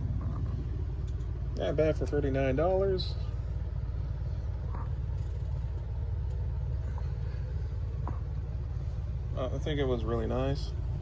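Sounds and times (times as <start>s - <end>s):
low background rumble: 0.0s - 11.0s.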